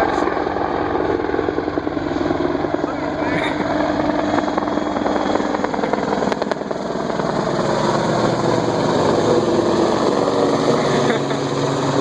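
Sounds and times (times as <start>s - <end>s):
helicopter engines running: 0.0s - 12.0s
helicopter rotor chopping: 0.0s - 12.0s.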